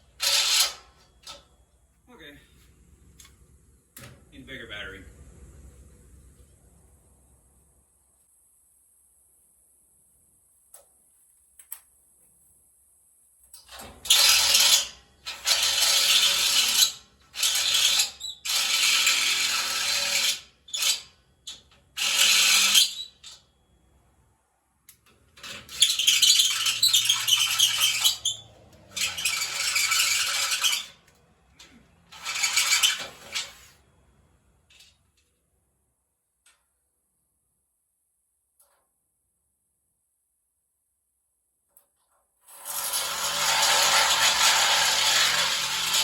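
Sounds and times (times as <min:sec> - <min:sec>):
power tool on metal: 0:00.1 - 0:01.4, 0:13.7 - 0:23.2, 0:25.4 - 0:31.0, 0:32.1 - 0:33.8, 0:42.5 - 0:46.0.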